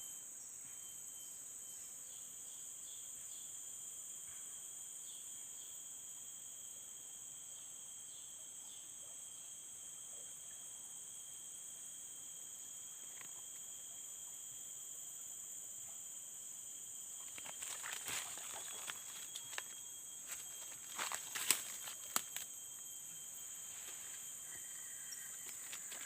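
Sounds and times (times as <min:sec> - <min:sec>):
faint insect chirps: 0:00.0 - 0:26.0
insects trilling: 0:00.0 - 0:26.0.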